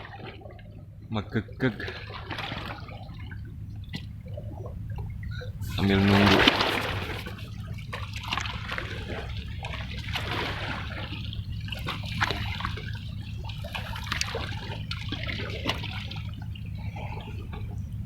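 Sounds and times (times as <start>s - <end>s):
steady low hum: 0.0s - 18.0s
water lapping against rocks: 0.0s - 18.0s.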